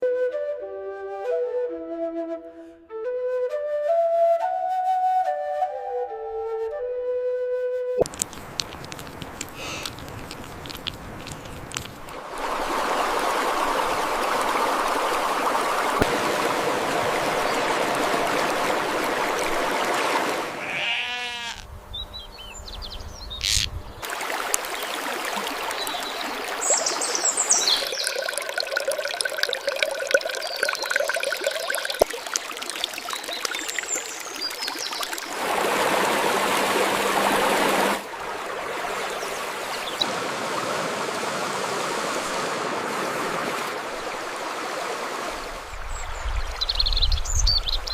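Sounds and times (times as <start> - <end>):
water running and trickling: 8.0 - 20.4, 24.0 - 40.8
farm animals bleating: 20.5 - 21.7.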